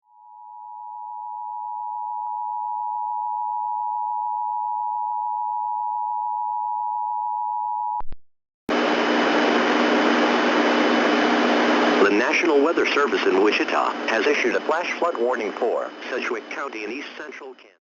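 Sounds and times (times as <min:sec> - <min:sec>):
low hum: 0:08.7 - 0:17.0
static hiss: 0:08.7 - 0:17.6.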